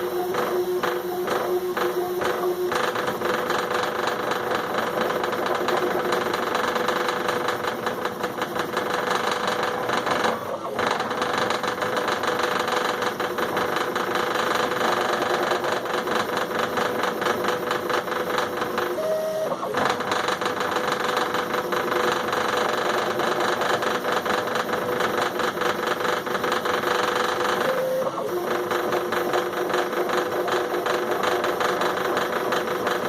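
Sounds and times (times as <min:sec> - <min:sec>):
stepper motor whine: 0:00.0 - 0:06.8
machine rapid rattle: 0:00.0 - 0:33.0.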